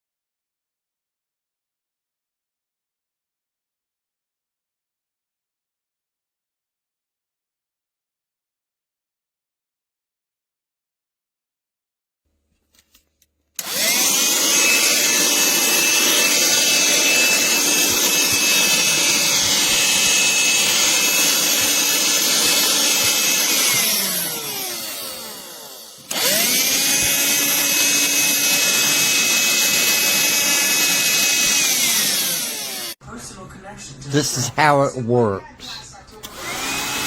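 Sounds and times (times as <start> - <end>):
handheld vacuum motor whining: 13.6 - 33.0, 36.2 - 37.0.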